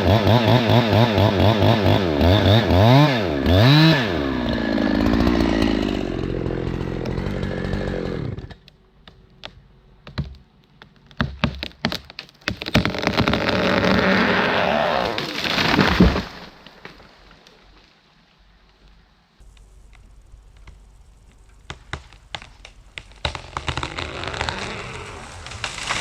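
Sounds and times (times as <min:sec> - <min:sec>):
chainsaw cutting wood: 0:00.0 - 0:08.8, 0:11.2 - 0:17.1, 0:21.7 - 0:26.0
wood knocks and cracks: 0:08.4 - 0:14.2, 0:15.2 - 0:17.2, 0:21.7 - 0:26.0.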